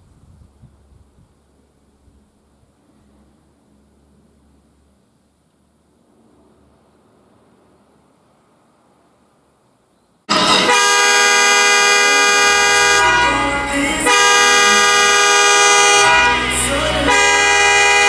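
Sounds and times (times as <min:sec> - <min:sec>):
loud horn-like alarm: 0:10.3 - 0:18.0.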